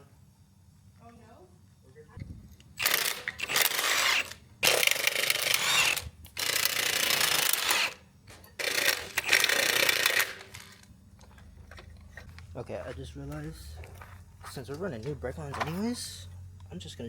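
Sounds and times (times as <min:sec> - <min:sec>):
hand tool ratcheting on metal: 0:02.8 - 0:08.0, 0:08.6 - 0:10.9.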